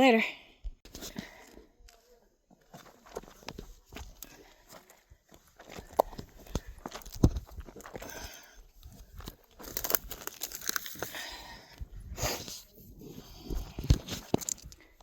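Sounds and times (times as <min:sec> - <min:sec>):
footsteps on rocky gravel: 0:00.9 - 0:12.0.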